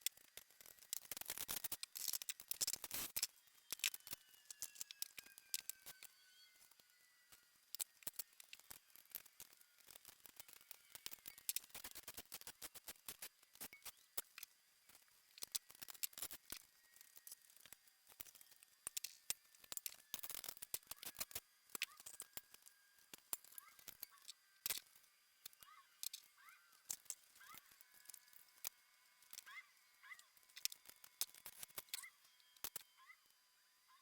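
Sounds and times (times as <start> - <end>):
clicks of tools and metal parts: 7.7 - 29.5, 30.4 - 32.9.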